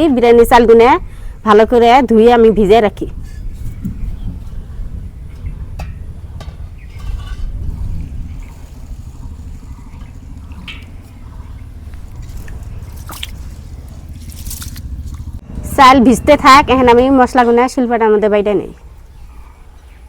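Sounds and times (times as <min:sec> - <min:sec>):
low rumble: 0:03.1 - 0:18.0
water drips and splashes: 0:03.6 - 0:15.4.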